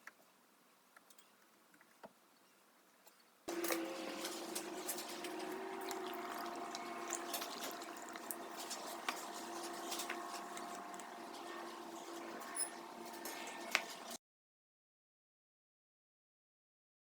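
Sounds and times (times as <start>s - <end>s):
small clicks and drips: 3.5s - 14.2s
steady hum: 3.5s - 14.2s
water running: 3.5s - 14.2s.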